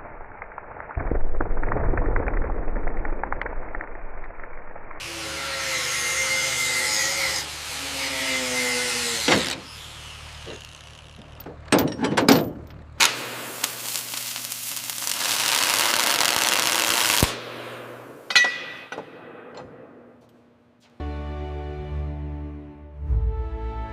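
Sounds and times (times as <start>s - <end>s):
power tool whining on metal: 5.0s - 12.1s
sharp knocks: 17.5s - 20.4s.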